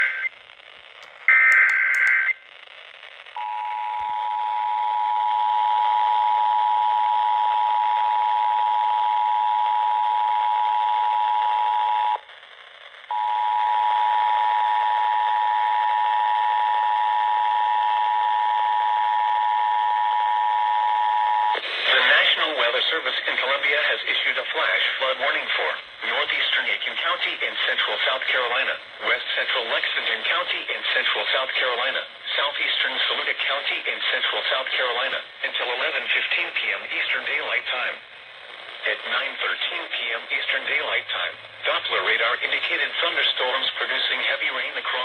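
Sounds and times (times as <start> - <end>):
radio hiss: 0.0 - 45.0
two-tone alarm tone: 1.3 - 2.4.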